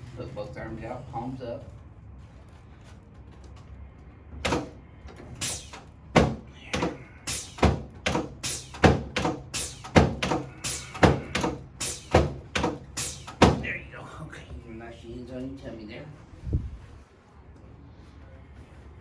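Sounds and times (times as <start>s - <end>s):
sharp knocks or clacks: 5.4s - 13.7s.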